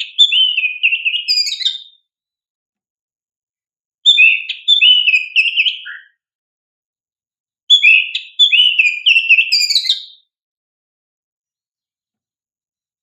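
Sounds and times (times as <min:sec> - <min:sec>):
bird singing whistled notes: 0:00.0 - 0:02.1, 0:04.0 - 0:06.2, 0:07.7 - 0:10.3.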